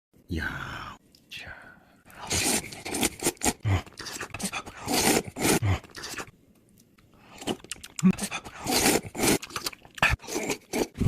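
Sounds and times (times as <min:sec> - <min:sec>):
wet mouth eating noises: 0:02.2 - 0:11.0.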